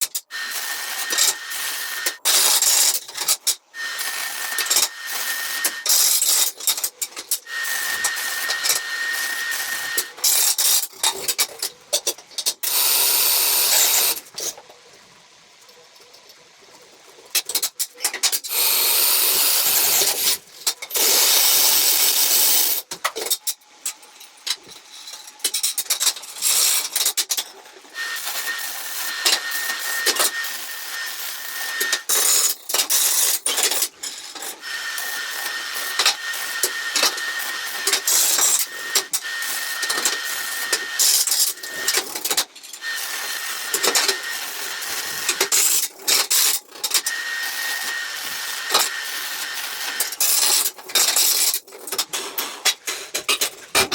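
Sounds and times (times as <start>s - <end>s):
welding hissing and rasping: 0.4s - 6.8s, 7.4s - 10.9s, 18.5s - 22.8s, 28.0s - 33.9s, 34.5s - 51.6s.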